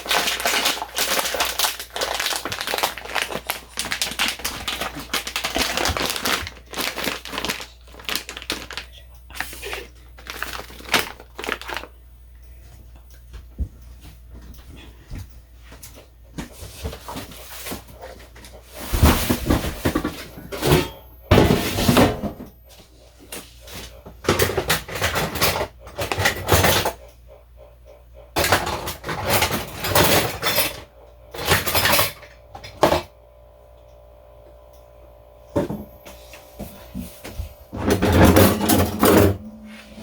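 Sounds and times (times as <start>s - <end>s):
dishes and utensils clattering: 18.9s - 22.5s, 28.4s - 32.2s, 37.8s - 39.4s.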